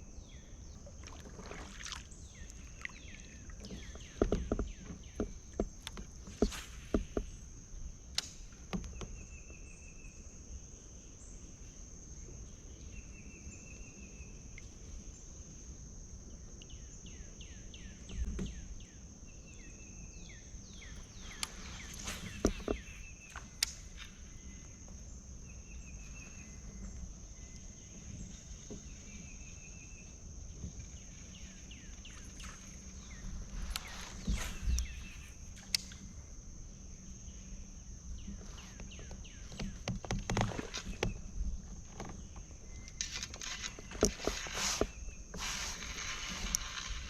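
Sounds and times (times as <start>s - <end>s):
high insect drone: 0.0s - 47.0s
knocks and rustles of gear: 38.6s - 47.0s.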